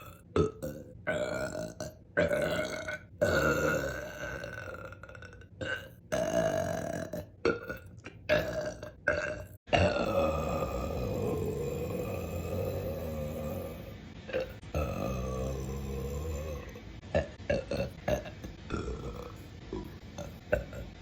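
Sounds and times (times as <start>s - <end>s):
woman burping: 0.0s - 21.0s.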